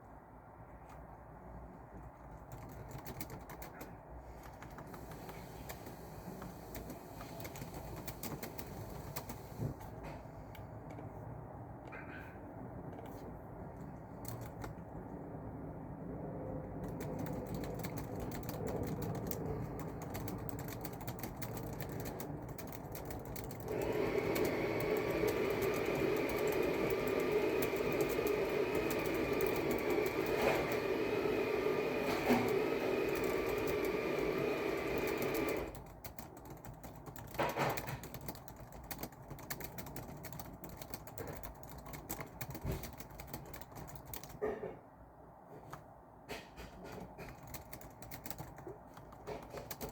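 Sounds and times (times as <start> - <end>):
typing on keyboard: 2.0 - 11.0, 13.8 - 15.1, 16.6 - 44.5, 46.8 - 49.9
loud mechanical hum: 23.3 - 35.8.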